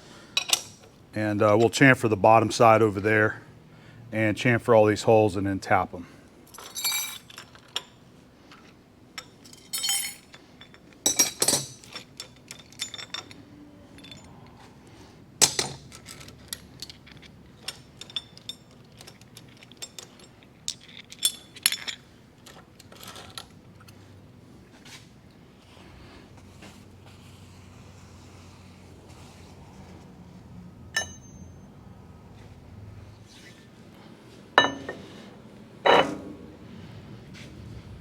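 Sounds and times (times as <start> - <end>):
metal tools clinking: 6.5 - 7.9, 9.2 - 14.4, 15.4 - 23.5, 31.0 - 31.6, 34.6 - 35.1, 35.9 - 36.4.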